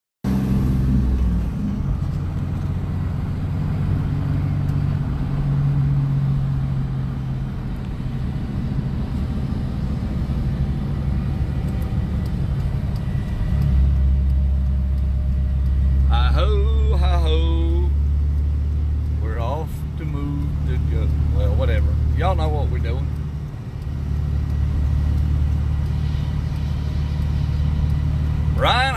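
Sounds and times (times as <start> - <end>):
farm machine engine droning: 22.6 - 28.9.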